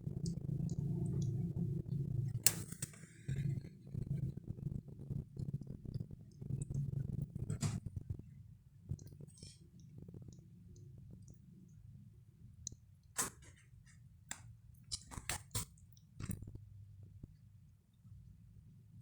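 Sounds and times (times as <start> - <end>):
steady low hum: 0.0 - 15.1
kittens clicking and scratching: 12.7 - 16.5.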